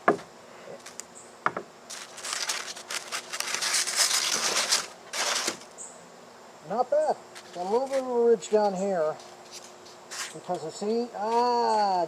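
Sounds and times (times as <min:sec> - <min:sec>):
foam scraping and crinkling: 0:01.9 - 0:05.7, 0:07.3 - 0:10.4
styrofoam clicks: 0:01.9 - 0:05.7.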